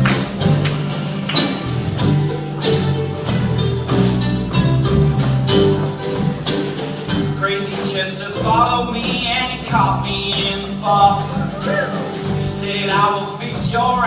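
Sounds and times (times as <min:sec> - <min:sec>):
strummed guitars: 0:00.0 - 0:14.0
person singing: 0:07.4 - 0:14.0.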